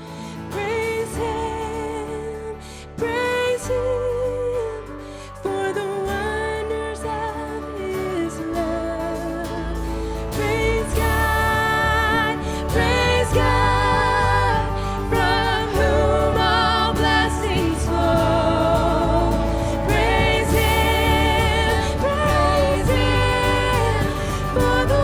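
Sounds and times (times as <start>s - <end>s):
person singing: 0.0s - 25.0s
steady bass: 0.0s - 25.0s
worship band music: 8.2s - 25.0s.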